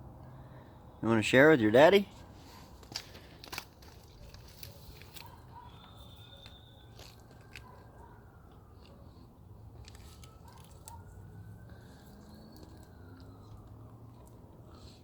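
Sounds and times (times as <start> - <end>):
dog chewing: 9.8 - 15.0.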